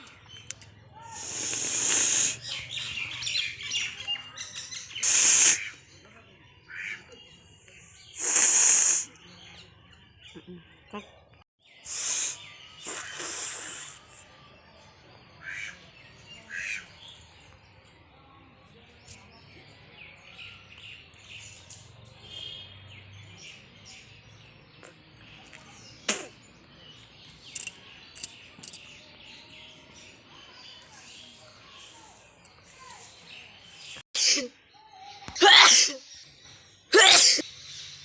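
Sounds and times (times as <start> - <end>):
birds chirping faintly: 0.0 - 38.0
person blowing nose: 1.2 - 2.4, 5.0 - 5.6, 8.2 - 9.1, 11.9 - 14.0.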